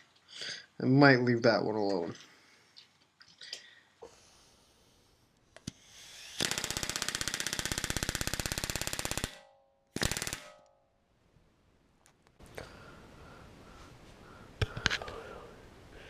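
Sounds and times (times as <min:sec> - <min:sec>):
pneumatic rivet gun hammering: 0:05.6 - 0:09.4.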